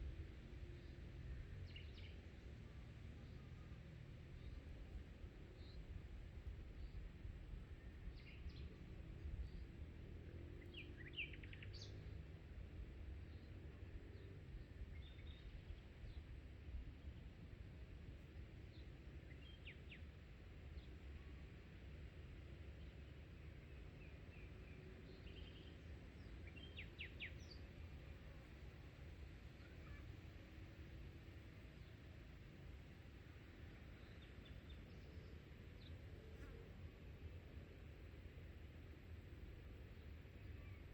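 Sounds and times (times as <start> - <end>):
low steady background rumble: 0.0 - 40.9
songbirds chirping: 18.3 - 40.9
faint bird chirps: 29.6 - 30.1.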